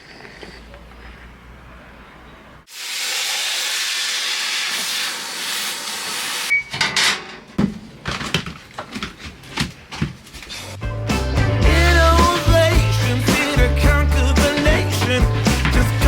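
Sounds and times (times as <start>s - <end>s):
loud steady hiss: 2.7s - 6.5s.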